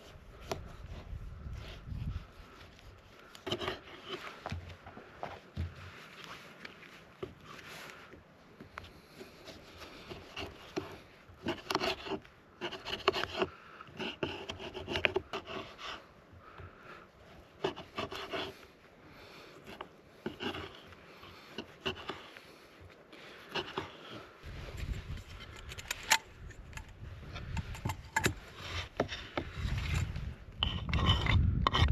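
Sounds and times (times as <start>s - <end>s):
scraping and rubbing strokes: 8.8s - 16.6s, 17.3s - 31.9s.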